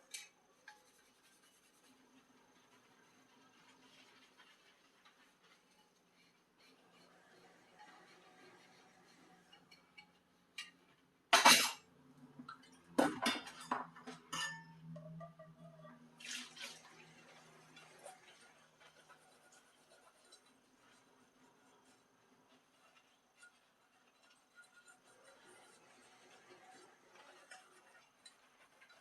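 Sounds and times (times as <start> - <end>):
dishes clattering: 10.6 - 11.9, 12.5 - 15.8
water splashing: 16.2 - 17.0.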